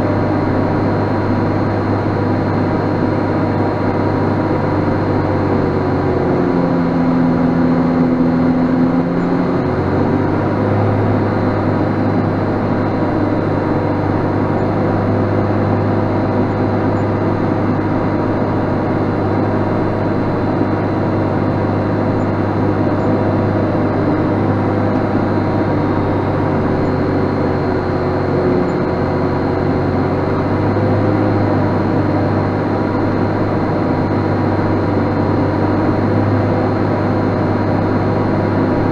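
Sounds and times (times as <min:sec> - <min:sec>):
tractor engine running under load: 0:00.0 - 0:38.9.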